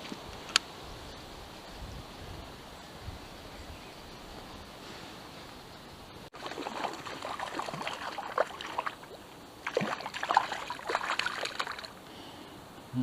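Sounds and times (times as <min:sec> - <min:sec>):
outdoor hiss: 0:00.0 - 0:13.0
river water gurgling and splashing: 0:06.3 - 0:12.1.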